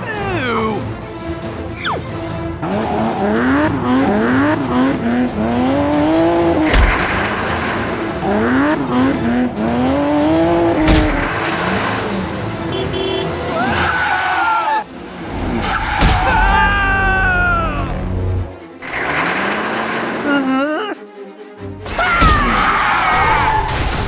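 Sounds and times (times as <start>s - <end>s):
car engine revving: 2.6s - 13.6s, 18.8s - 20.3s.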